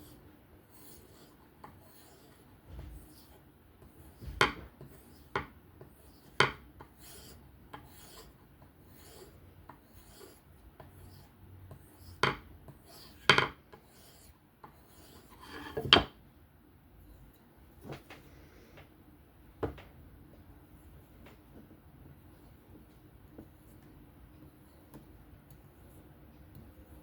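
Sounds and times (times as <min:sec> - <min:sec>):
knife scraping on sharpening stone: 0:15.0 - 0:15.9.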